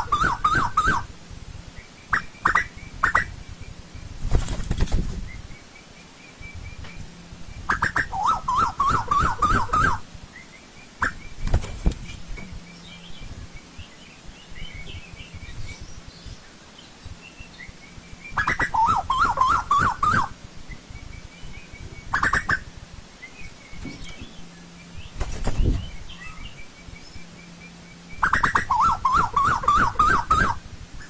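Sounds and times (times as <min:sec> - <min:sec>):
koel warbling call: 0:00.0 - 0:01.1, 0:07.7 - 0:10.0, 0:18.4 - 0:20.3, 0:28.2 - 0:30.6
small birds chirping: 0:00.0 - 0:31.0.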